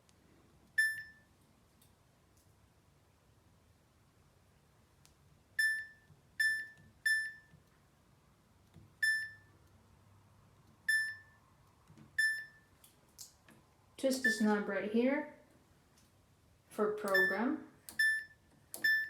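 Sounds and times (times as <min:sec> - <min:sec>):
short electronic beeps: 0:00.8 - 0:01.2, 0:05.6 - 0:07.5, 0:09.0 - 0:09.5, 0:10.9 - 0:11.4, 0:12.2 - 0:12.7, 0:17.1 - 0:17.4, 0:18.0 - 0:19.0.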